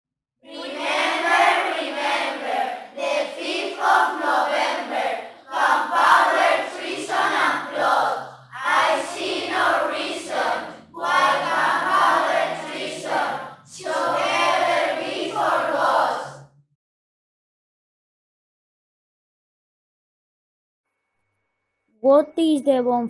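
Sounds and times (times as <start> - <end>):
group of voices singing: 0.5 - 16.5.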